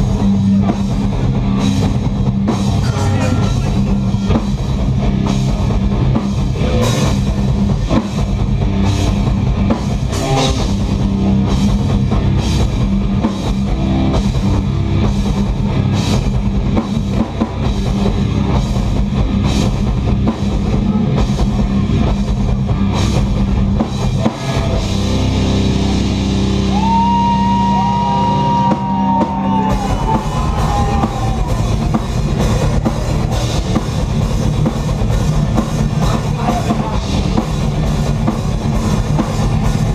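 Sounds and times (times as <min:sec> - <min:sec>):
heavy rock band playing: 0:00.0 - 0:39.9
guitar note bending: 0:02.6 - 0:04.7.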